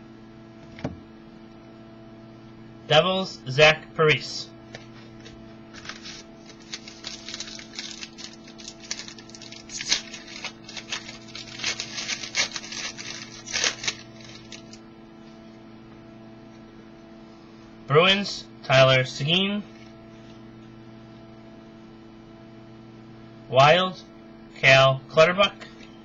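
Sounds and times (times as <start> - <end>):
steady electrical hum: 0.0 - 26.0
trading cards sliding and flicking: 4.8 - 14.8.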